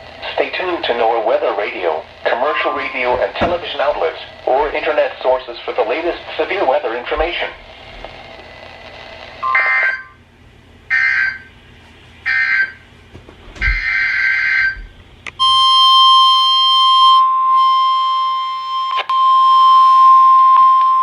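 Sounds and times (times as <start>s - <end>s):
steady alarm tone: 2.2s - 7.7s, 9.4s - 10.2s, 10.9s - 11.6s, 12.2s - 12.8s, 13.6s - 21.0s.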